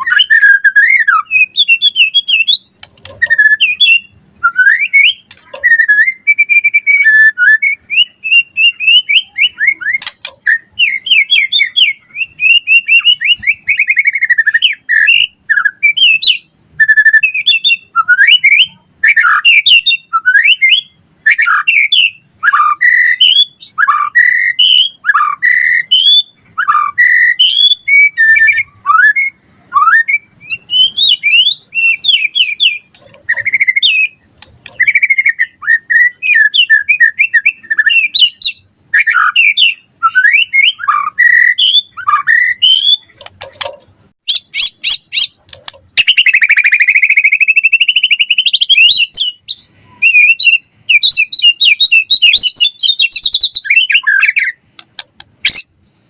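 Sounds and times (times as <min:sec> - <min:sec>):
bird singing whistled phrases: 0:00.0 - 0:43.2, 0:44.3 - 0:45.4, 0:46.0 - 0:54.6, 0:55.4 - 0:55.8
bird clicks: 0:05.2 - 0:05.7, 0:09.9 - 0:10.5, 0:34.4 - 0:34.9, 0:43.1 - 0:43.9, 0:45.4 - 0:45.9, 0:54.8 - 0:55.6.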